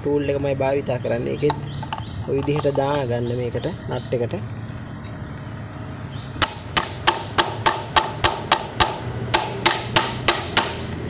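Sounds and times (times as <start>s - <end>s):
hammer striking metal tool: 1.4s - 3.1s.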